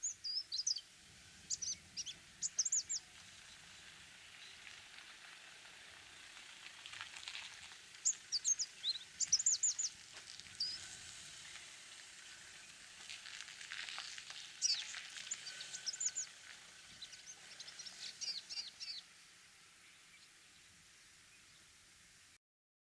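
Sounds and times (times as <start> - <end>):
bird twittering song: 0.0 - 4.8, 7.3 - 11.0, 13.7 - 22.0
faint steady hiss: 0.0 - 22.4.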